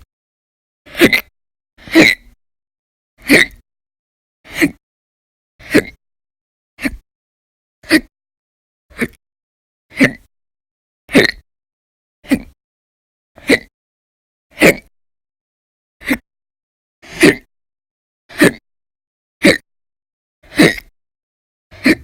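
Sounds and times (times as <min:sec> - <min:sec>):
person hiccuping: 0:00.9 - 0:02.4, 0:03.2 - 0:03.6, 0:05.6 - 0:06.0, 0:09.9 - 0:10.3, 0:11.1 - 0:11.4, 0:13.4 - 0:13.7, 0:14.6 - 0:14.9, 0:17.1 - 0:17.5, 0:18.3 - 0:18.6, 0:19.4 - 0:19.6, 0:20.5 - 0:20.9, 0:21.7 - 0:22.0.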